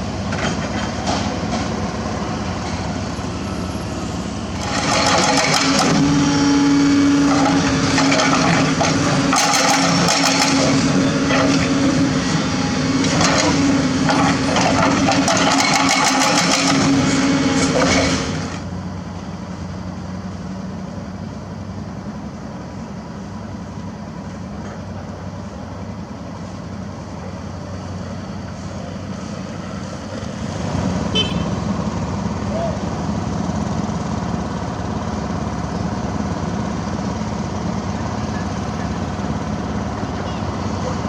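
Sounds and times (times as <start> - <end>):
heavy diesel machinery engine: 0.0 - 41.0
sharp knocks and rattles: 7.9 - 11.6, 13.2 - 16.9.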